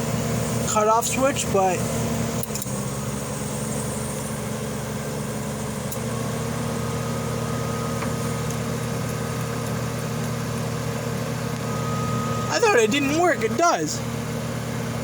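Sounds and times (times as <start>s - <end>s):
dehumidifier humming: 6.4s - 15.0s.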